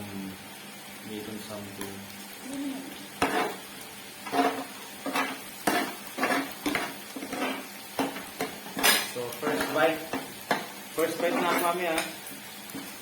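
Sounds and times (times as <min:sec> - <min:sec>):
meat sizzling: 0:00.0 - 0:13.0
metal utensil scraping grill pan: 0:03.2 - 0:03.6, 0:04.2 - 0:13.0.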